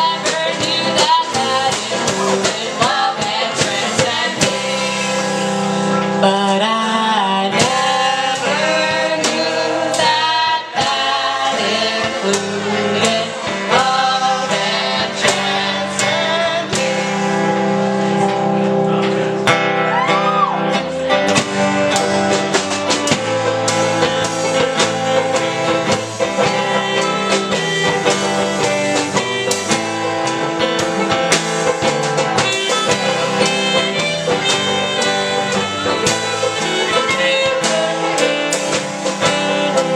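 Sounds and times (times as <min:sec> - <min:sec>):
person singing: 0:00.0 - 0:17.5, 0:30.7 - 0:39.9
guitar: 0:00.0 - 0:39.9.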